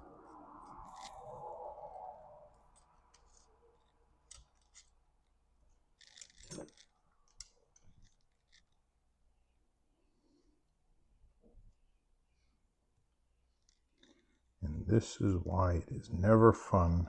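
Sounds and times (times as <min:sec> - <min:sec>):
small parts clicking: 0:02.7 - 0:08.9.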